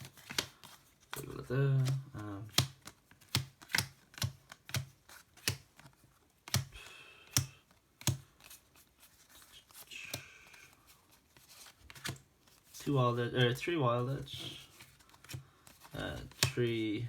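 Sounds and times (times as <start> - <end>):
cards clicking on a table: 0.0 - 8.6, 9.7 - 12.2, 14.6 - 16.8
cards sliding rustles: 0.0 - 17.0.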